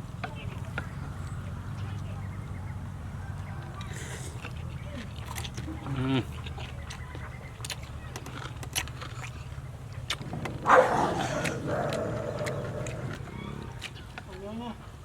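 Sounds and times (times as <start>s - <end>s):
wet mouth clicks: 3.8s - 14.0s
noodles being chewed: 3.8s - 14.4s.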